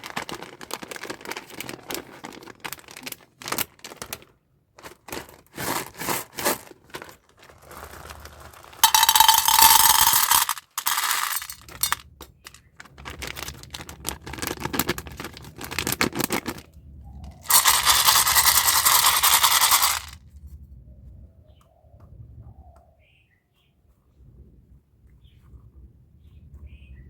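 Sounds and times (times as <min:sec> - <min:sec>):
packaging tearing: 0:00.0 - 0:08.8, 0:12.8 - 0:16.6
plastic and paper crinkling: 0:00.0 - 0:16.6, 0:17.4 - 0:20.2.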